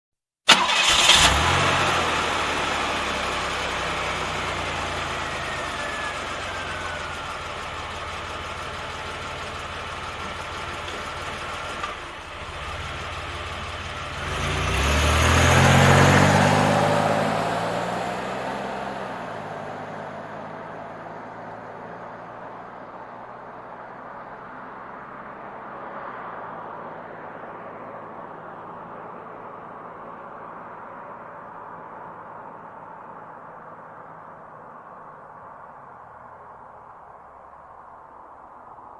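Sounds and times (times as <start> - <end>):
car engine revving: 0.5 - 22.1
car engine starting and idling: 0.5 - 25.8.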